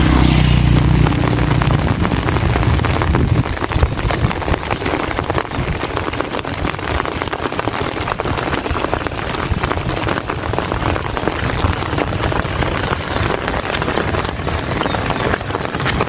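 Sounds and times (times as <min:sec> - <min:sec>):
low rumble: 0:00.0 - 0:05.3
heavy rain: 0:00.0 - 0:16.0.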